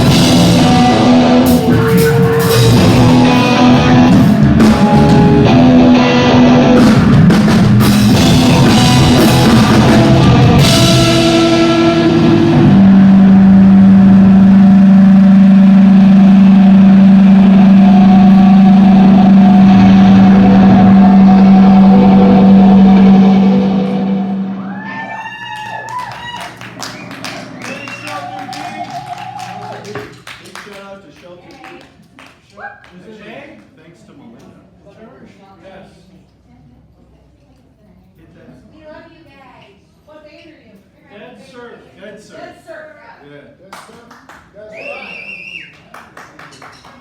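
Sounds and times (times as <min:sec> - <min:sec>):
live band playing: 0:00.0 - 0:15.8, 0:26.1 - 0:30.2
drums: 0:00.0 - 0:23.8, 0:24.4 - 0:30.7
audience clapping: 0:25.3 - 0:33.1, 0:43.7 - 0:47.0.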